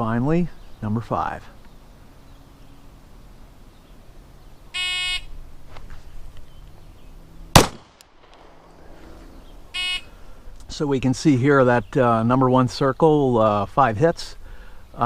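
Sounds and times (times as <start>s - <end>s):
pistol shot: 7.6s - 8.6s.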